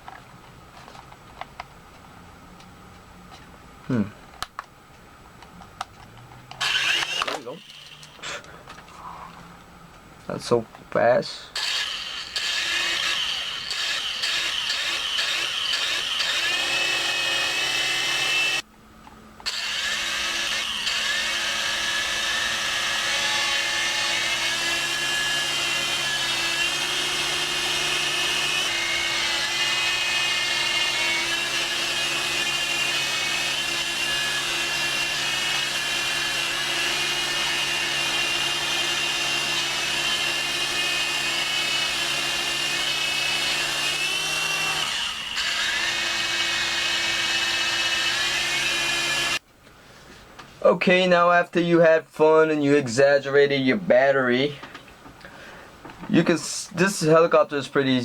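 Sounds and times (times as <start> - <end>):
toy helicopter motors whirring: 6.6 - 8.4, 11.6 - 18.6, 19.4 - 49.4.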